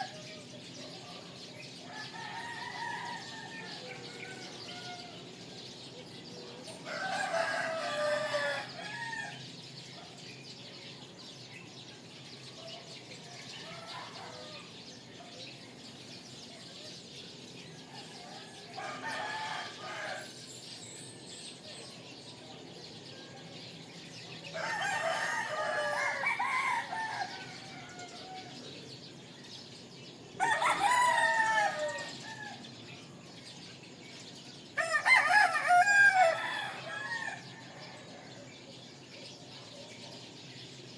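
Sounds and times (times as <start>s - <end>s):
small birds chirping: 0.0s - 40.9s
rooster crowing: 1.9s - 5.2s, 6.8s - 9.4s, 18.0s - 20.4s, 24.5s - 28.6s, 30.4s - 32.7s, 34.8s - 38.4s.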